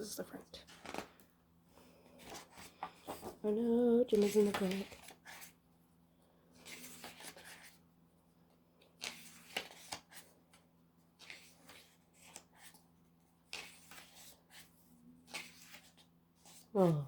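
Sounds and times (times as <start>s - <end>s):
book pages turning: 0.6s - 1.3s, 2.1s - 3.5s, 4.1s - 5.6s, 6.5s - 7.8s, 8.8s - 16.7s.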